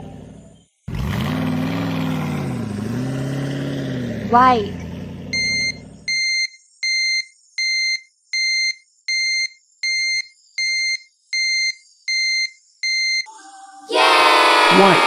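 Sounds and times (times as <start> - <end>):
electronic beeping: 5.4 - 13.3.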